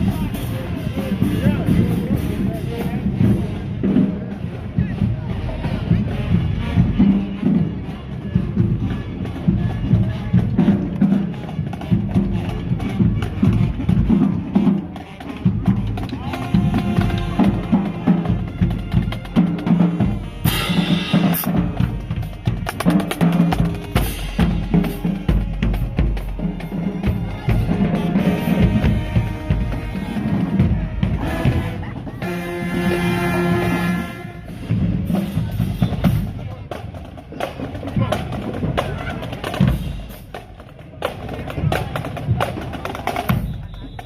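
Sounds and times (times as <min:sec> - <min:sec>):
pounding bass drums: 0:00.0 - 0:33.8
snare drum strokes and rimshots: 0:10.5 - 0:32.5.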